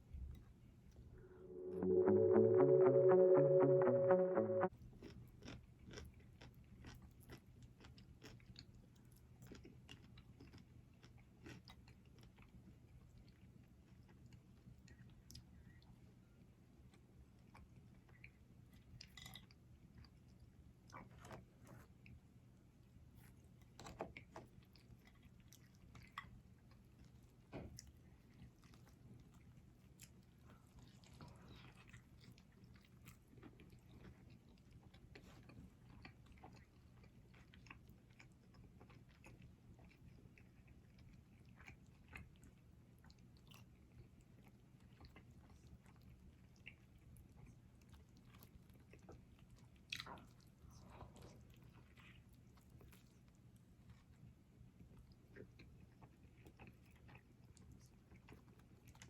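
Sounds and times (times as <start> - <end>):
faint low hum: 0.0 - 4.7
person chewing food: 27.8 - 54.2.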